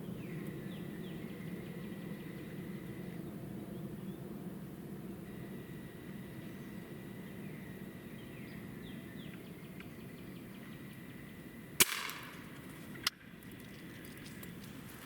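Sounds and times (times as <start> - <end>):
air rifle crack with hiss: 11.8 - 13.1.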